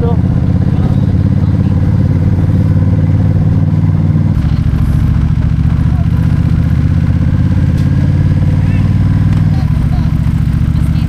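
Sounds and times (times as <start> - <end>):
vehicle engine running loudly: 0.0 - 11.0.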